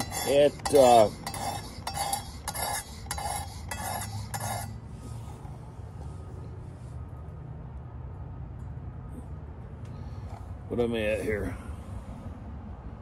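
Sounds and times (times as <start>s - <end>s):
stone scraping knife edge: 0.0s - 4.8s.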